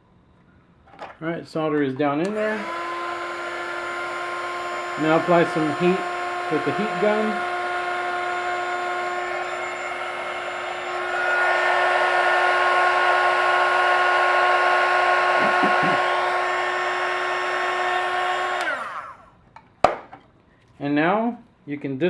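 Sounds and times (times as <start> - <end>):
heat gun fan whine: 2.2 - 19.3.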